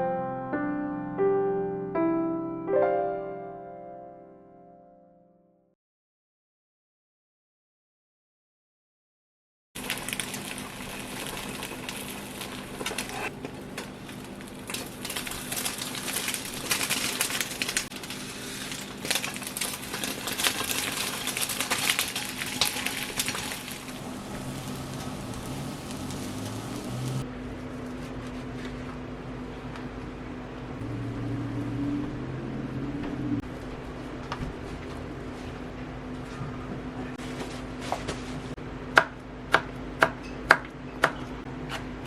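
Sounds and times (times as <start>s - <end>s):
steady low hum: 23.2s - 40.0s.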